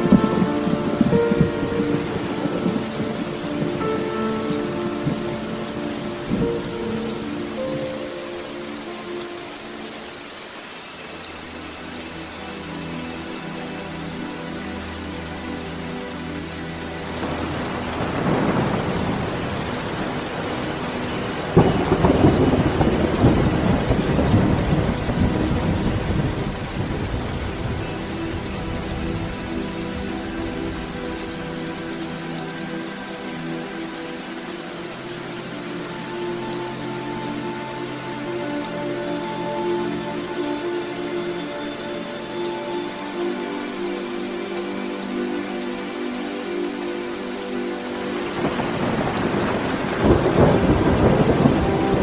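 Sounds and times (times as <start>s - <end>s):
soft music of long held notes: 0.0s - 52.0s
steady rain: 0.0s - 52.0s
thunderclap and rumbling thunder: 17.2s - 29.4s, 48.4s - 52.0s.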